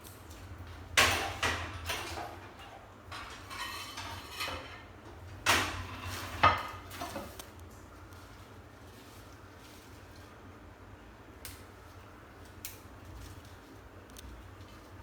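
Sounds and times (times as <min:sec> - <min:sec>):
utensils clinking on a plate: 0:00.9 - 0:07.3.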